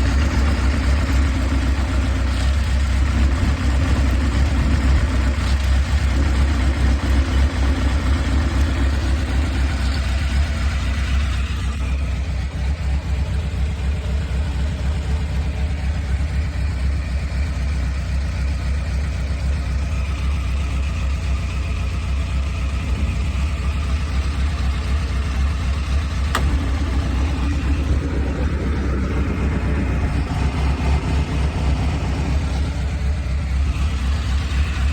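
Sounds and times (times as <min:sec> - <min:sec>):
motorcycle engine idling with whir: 0:00.0 - 0:34.9
click: 0:26.2 - 0:27.6.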